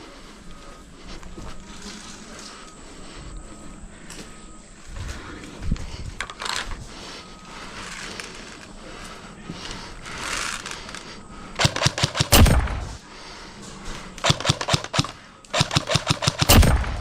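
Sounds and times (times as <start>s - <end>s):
airsoft rifle firing bursts: 11.6s - 13.0s, 14.2s - 17.0s.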